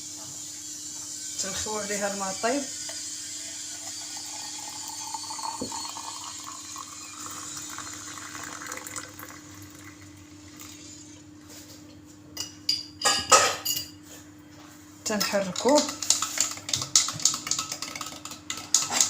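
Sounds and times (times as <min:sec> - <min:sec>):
hot water pouring into a glass: 0:02.8 - 0:11.2
spoon clinking against glass: 0:03.8 - 0:07.4, 0:12.4 - 0:14.0.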